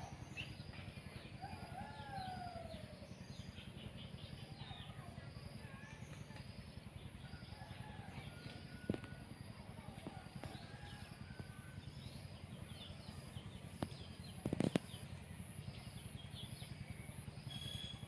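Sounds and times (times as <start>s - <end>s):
bird chirps: 15.8s - 18.0s.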